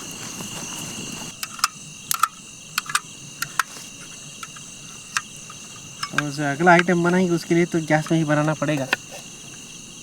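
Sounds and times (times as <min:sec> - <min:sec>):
crickets chirring: 0:00.0 - 0:10.0
sharp clicks and snaps: 0:01.3 - 0:03.7.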